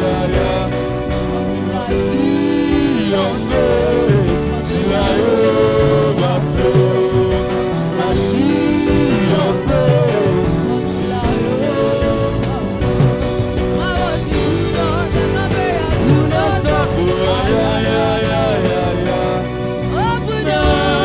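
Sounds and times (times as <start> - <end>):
band holding sustained chords: 0.0 - 21.0.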